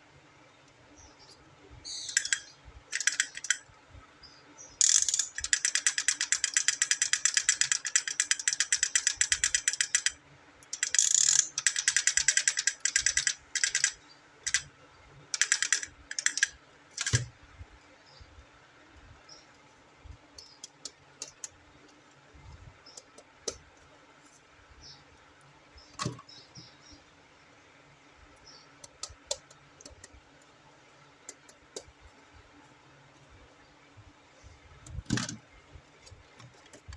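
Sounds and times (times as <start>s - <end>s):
toy gear ratchet clicking: 2.0s - 3.6s, 4.8s - 14.7s, 15.3s - 17.3s.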